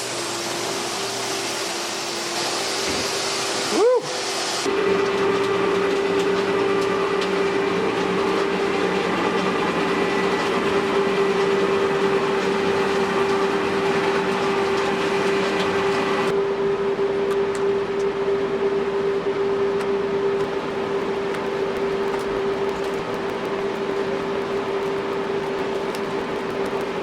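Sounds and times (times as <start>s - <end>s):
machine motor humming: 4.6s - 16.4s, 20.4s - 27.0s.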